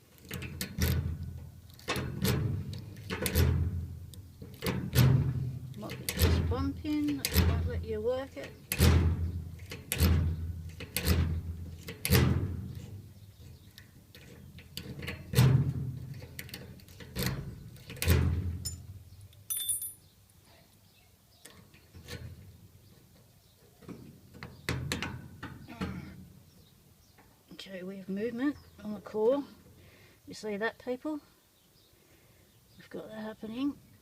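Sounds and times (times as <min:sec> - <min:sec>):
padlock clanking against gate: 0:00.2 - 0:07.8, 0:08.4 - 0:12.3, 0:14.2 - 0:20.0.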